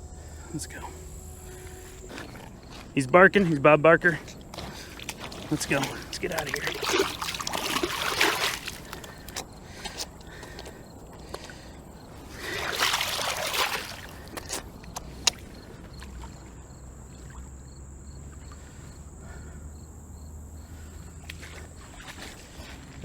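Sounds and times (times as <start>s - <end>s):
fish splashing into water: 4.1s - 17.6s.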